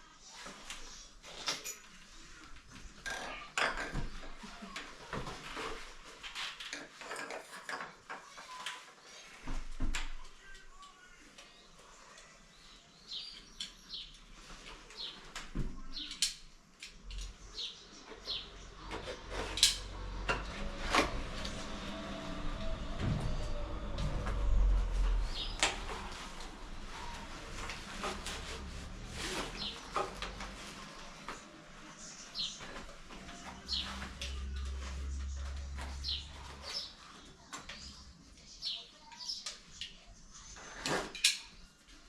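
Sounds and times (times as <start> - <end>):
shower fittings knocking and clunking: 3.0 - 4.5.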